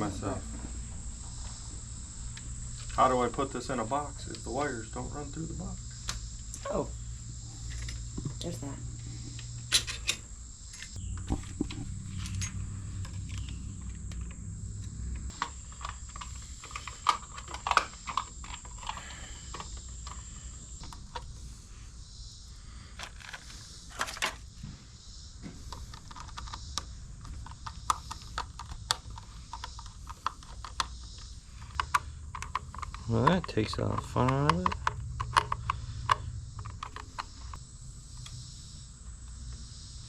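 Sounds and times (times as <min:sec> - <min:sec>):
low hum: 0:00.0 - 0:23.0, 0:31.4 - 0:40.0
high insect drone: 0:00.0 - 0:40.0.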